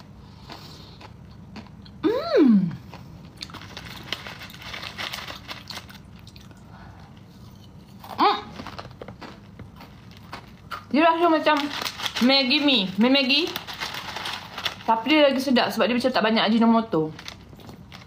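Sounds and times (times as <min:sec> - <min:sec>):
person chewing crunchy snack: 0:00.0 - 0:10.9
person humming mmm: 0:02.0 - 0:02.9.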